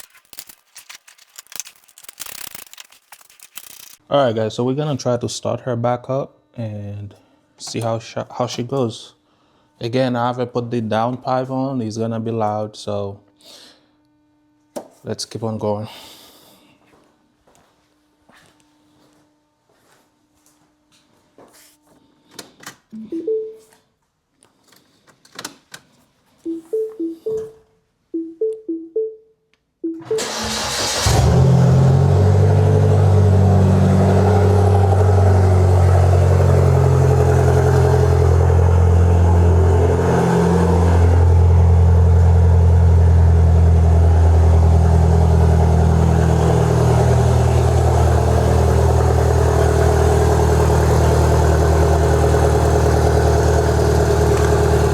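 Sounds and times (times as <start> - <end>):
starter clicks and chirps: 0.0 - 4.0
car engine idling loudly: 40.6 - 54.9.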